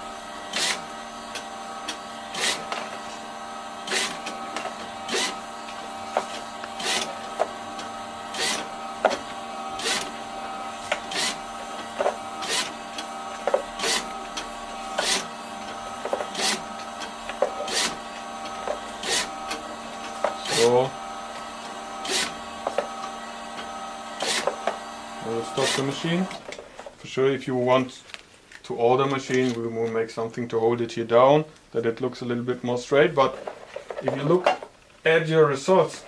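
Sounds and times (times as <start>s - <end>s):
labelling machine humming: 0.0s - 26.4s.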